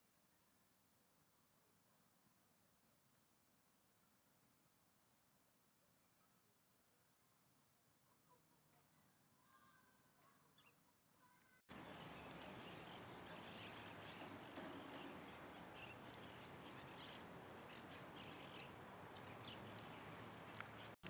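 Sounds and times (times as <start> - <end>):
faint bird chirps: 11.7 - 21.0
steady background hiss: 11.7 - 21.0.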